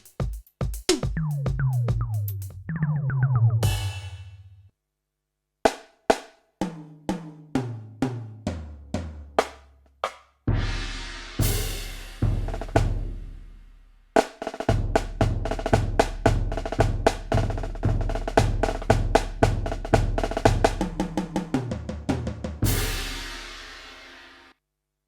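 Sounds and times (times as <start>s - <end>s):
electronic drum kit groove: 0.0s - 4.4s, 14.2s - 24.2s
crash cymbal with kick: 3.6s - 4.4s, 10.5s - 14.8s, 22.6s - 24.5s.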